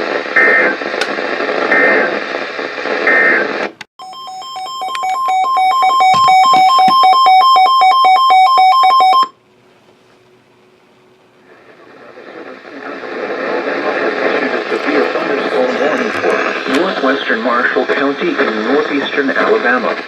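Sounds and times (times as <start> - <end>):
radio broadcast hiss: 0.0 - 3.8, 11.4 - 20.0
rapid electronic alarm beeps: 4.0 - 9.3
warbling data bursts: 14.3 - 18.1.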